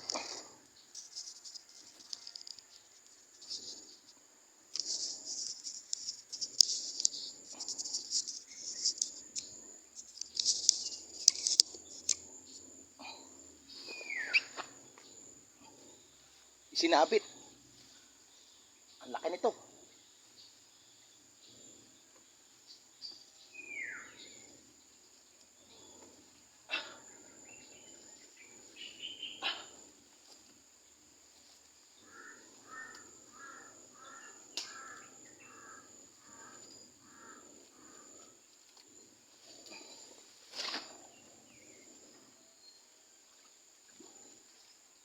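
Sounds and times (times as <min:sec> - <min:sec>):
high insect drone: 0:00.0 - 0:45.0
bird calls: 0:13.1 - 0:15.9, 0:23.5 - 0:24.5, 0:26.7 - 0:29.9, 0:32.0 - 0:38.3.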